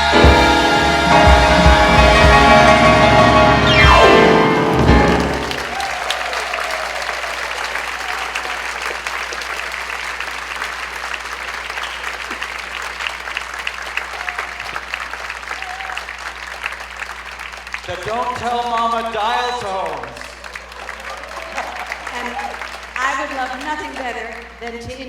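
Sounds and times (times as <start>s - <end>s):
song accompaniment falling run: 0.0s - 6.0s
audience whooping: 0.0s - 18.4s, 19.9s - 23.1s
audience applauding: 0.0s - 25.0s.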